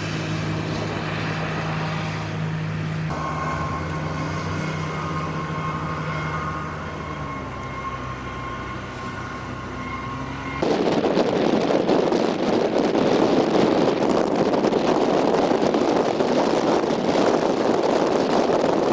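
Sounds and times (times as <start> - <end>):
vehicle engine humming: 0.0 - 17.3
wind buffeting microphone: 0.0 - 18.9
faint steady tones: 2.4 - 10.6.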